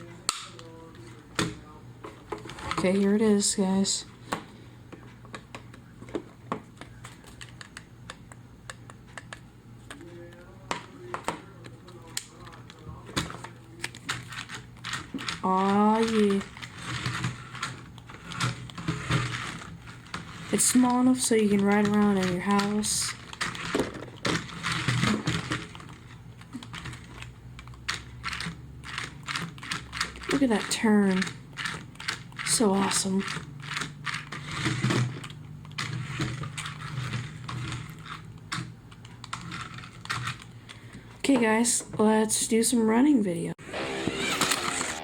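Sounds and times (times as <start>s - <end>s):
toy truck motor whirring: 43.7s - 45.0s.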